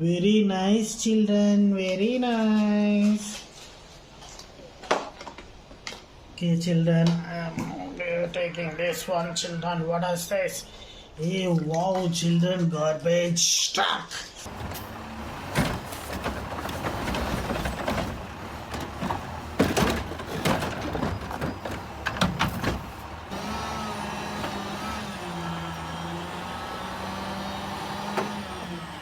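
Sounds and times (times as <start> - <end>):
clanks and bangs: 14.5 - 25.8
truck engine hum: 14.5 - 29.0.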